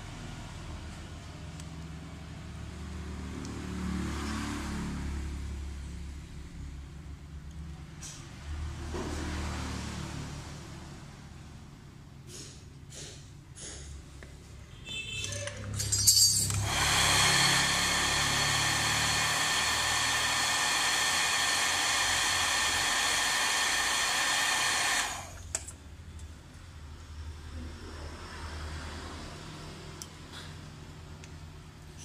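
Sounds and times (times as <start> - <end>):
hair dryer blowing: 16.5 - 25.5.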